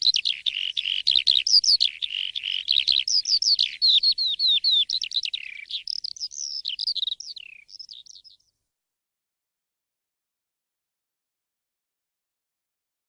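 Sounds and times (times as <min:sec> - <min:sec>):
starling singing whistled notes: 0:00.0 - 0:08.5.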